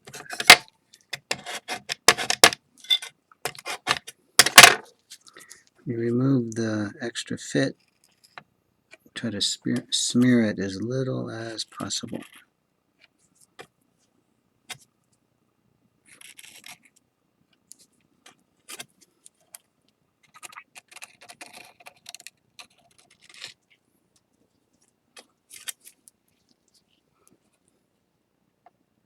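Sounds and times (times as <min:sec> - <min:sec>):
palette knife scraping ceramic plate: 0:01.3 - 0:04.0.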